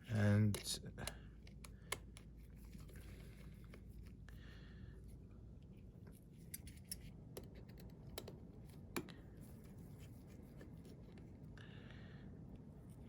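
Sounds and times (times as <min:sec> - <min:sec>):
small tools clicking and scratching: 0:06.4 - 0:09.2.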